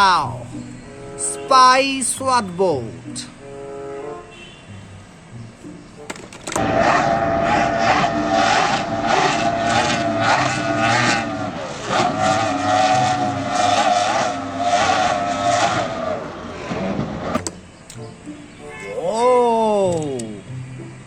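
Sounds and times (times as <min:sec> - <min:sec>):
engine revving in surges: 0:06.5 - 0:18.0.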